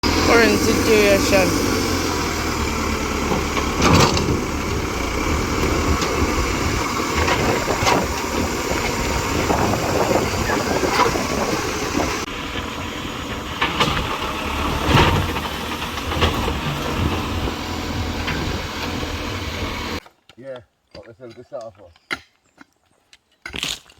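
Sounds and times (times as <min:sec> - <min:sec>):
engine running: 0:00.0 - 0:20.0
knocks of digging into rock: 0:23.4 - 0:23.9.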